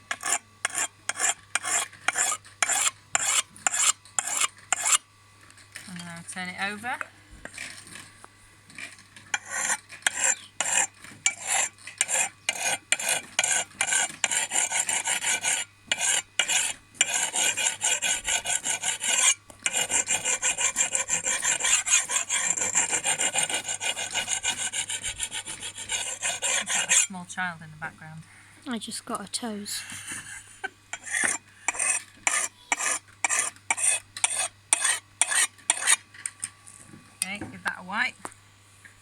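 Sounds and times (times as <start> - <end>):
sharpening stone scraping steel blade: 0.1 - 5.0, 9.4 - 27.1, 30.9 - 36.0.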